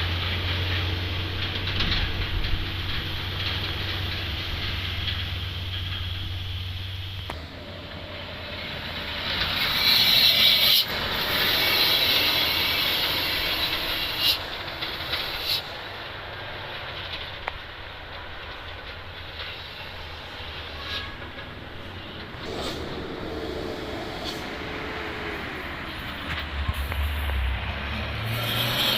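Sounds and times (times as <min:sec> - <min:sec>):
truck rumble passing: 0:00.0 - 0:28.9
air brake hissing: 0:22.4 - 0:24.9.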